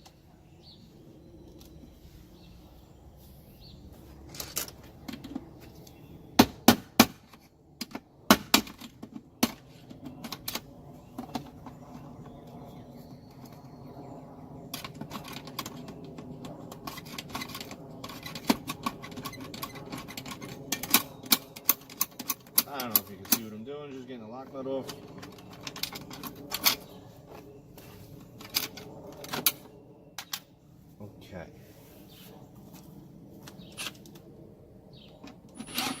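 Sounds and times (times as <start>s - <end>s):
hand tools clicking and knocking: 35.5s - 36.0s.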